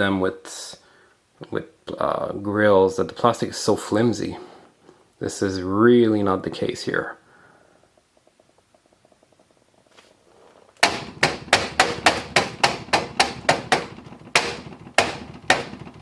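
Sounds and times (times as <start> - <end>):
fingers knocking on plastic grill: 10.8 - 15.8.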